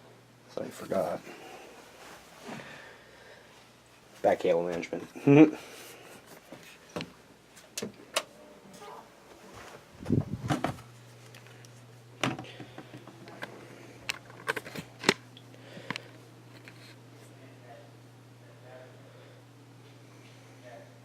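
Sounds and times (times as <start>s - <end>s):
steady low hum: 0.0s - 21.0s
cables and plugs clicking: 11.2s - 16.8s.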